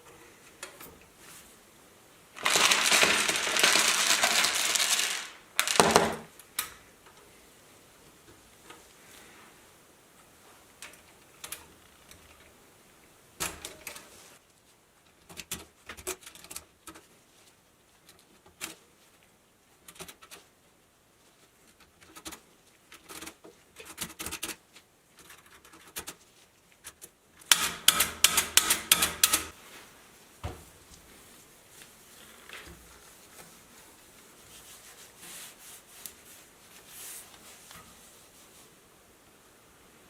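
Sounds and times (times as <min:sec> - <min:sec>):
mechanical calculator clicking: 0:27.5 - 0:29.5.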